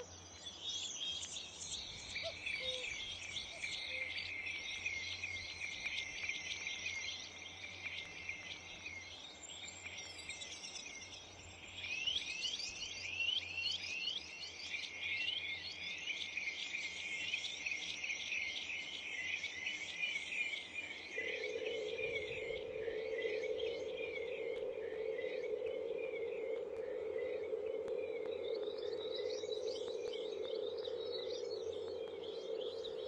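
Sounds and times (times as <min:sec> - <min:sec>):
small birds chirping: 0:00.0 - 0:33.0
steady low hum: 0:20.8 - 0:33.0.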